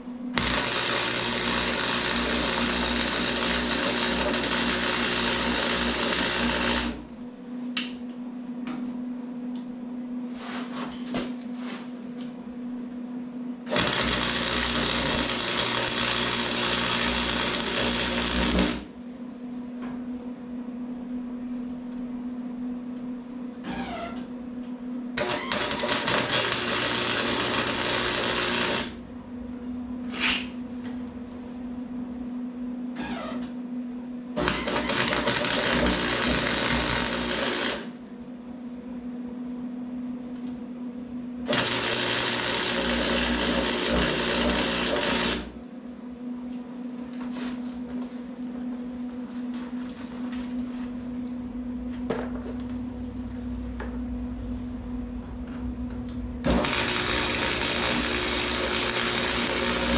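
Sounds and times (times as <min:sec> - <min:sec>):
welder hum: 0:00.0 - 0:07.9, 0:13.7 - 0:19.2, 0:23.6 - 0:24.3, 0:25.2 - 0:33.5, 0:34.3 - 0:38.1, 0:41.4 - 0:45.7, 0:53.4 - 0:59.9
arc welder crackling: 0:00.3 - 0:08.0, 0:13.7 - 0:19.1, 0:23.6 - 0:31.4, 0:34.4 - 0:38.1, 0:41.5 - 0:45.7, 0:56.4 - 0:59.9.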